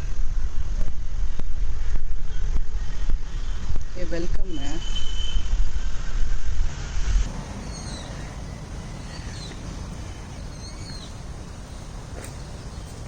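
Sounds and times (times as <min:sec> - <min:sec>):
small birds chirping: 0:07.3 - 0:13.0.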